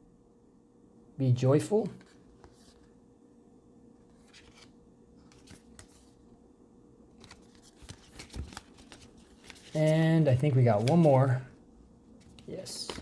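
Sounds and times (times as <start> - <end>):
paper cards rustling: 1.8 - 3.0, 4.0 - 6.2, 7.1 - 11.6, 12.2 - 13.0.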